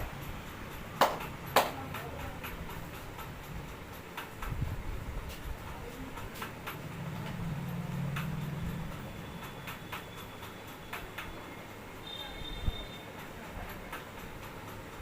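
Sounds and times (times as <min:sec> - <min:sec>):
hands clicking and tapping: 0:00.9 - 0:02.6, 0:10.8 - 0:11.4.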